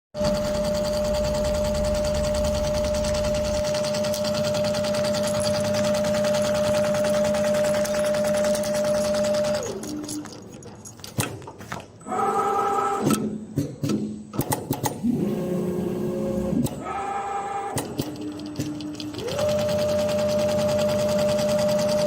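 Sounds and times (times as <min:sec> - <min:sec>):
sewing machine clicks: 0:00.2 - 0:10.0
sewing machine stitching: 0:00.2 - 0:10.2, 0:14.4 - 0:22.0.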